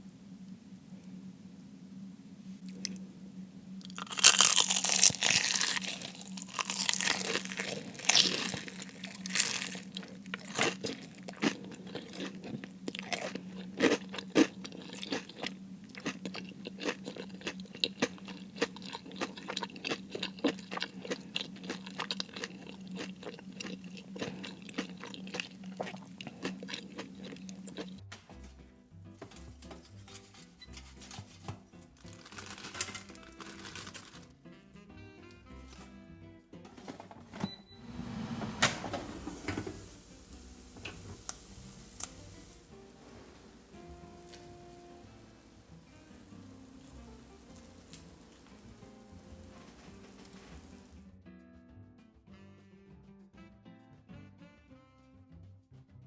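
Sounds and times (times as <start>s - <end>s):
crunching crispy fried food: 2.6s - 3.0s, 3.8s - 28.0s, 29.9s - 34.4s, 39.8s - 50.9s.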